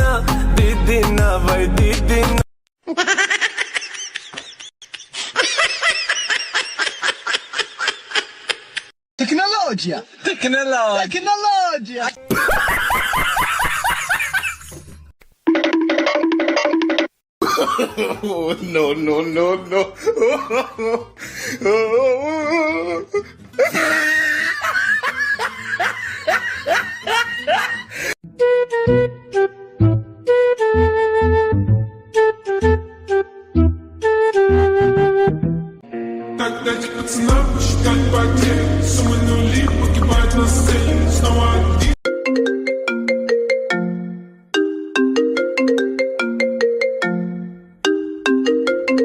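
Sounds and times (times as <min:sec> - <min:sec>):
person giggling: 0:02.8 - 0:08.9, 0:17.4 - 0:18.5, 0:19.6 - 0:28.1.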